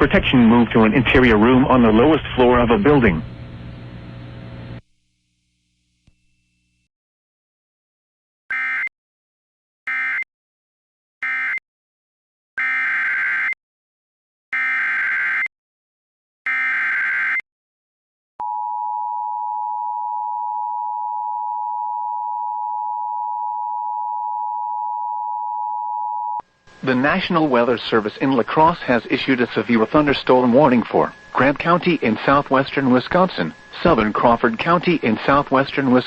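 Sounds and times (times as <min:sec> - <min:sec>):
steady attention tone: 0:18.4 - 0:36.0
alert data bursts: 0:26.8 - 0:36.0.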